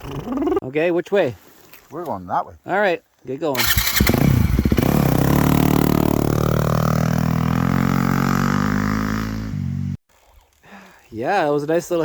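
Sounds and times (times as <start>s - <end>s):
dirt bike engine revving: 3.6s - 10.0s.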